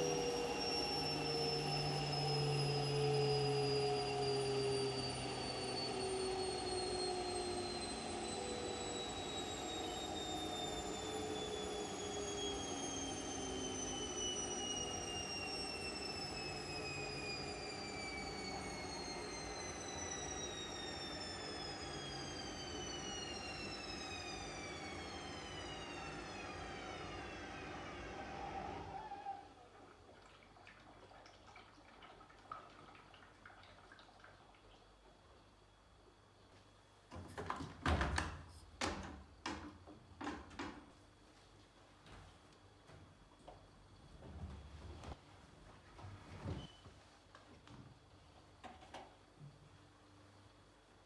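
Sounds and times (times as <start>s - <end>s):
washing machine motor whining: 0.0s - 29.9s.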